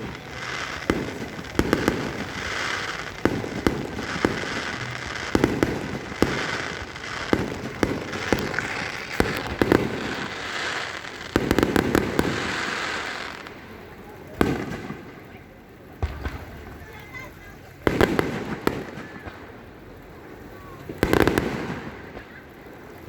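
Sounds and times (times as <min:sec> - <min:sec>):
fireworks bursting: 0:00.0 - 0:23.0
fireworks crackling: 0:00.0 - 0:23.0.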